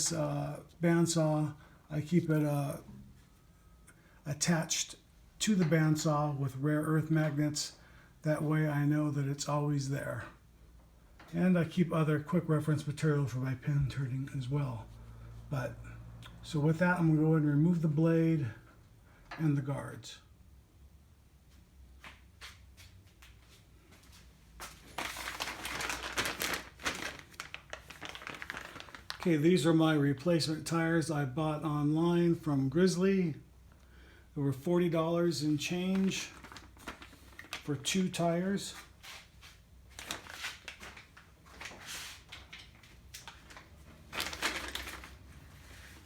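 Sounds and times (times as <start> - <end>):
rustling: 22.4 - 29.3, 38.7 - 46.0.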